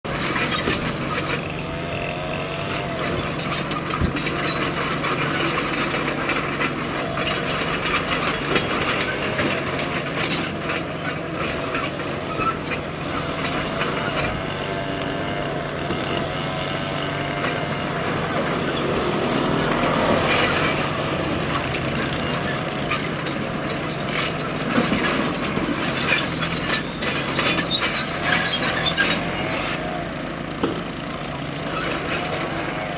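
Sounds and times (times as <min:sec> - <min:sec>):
bulldozer diesel engine: 0:00.0 - 0:32.9
metallic clanks and rattles: 0:03.0 - 0:14.7, 0:20.2 - 0:29.6.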